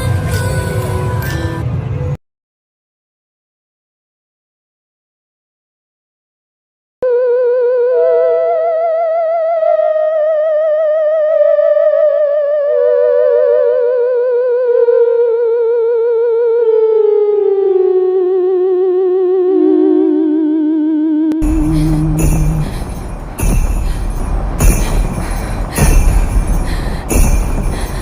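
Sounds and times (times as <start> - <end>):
eerie theremin tone: 7.0 - 27.8.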